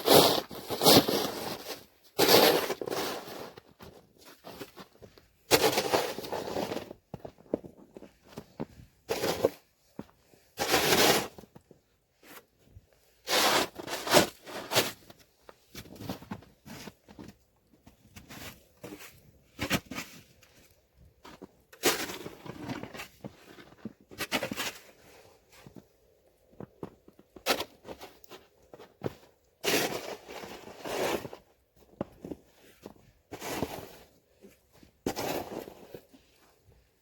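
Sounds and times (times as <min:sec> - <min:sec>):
snow shovel scraping snow: 0:00.0 - 0:04.8, 0:05.5 - 0:06.9, 0:09.1 - 0:09.6, 0:10.6 - 0:11.5, 0:13.2 - 0:15.0, 0:21.8 - 0:25.1, 0:29.6 - 0:31.4, 0:33.3 - 0:34.2, 0:35.1 - 0:36.2.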